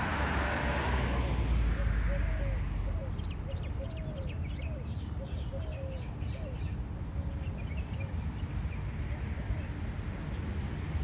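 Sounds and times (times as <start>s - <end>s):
steady low rumble: 0.0s - 1.8s.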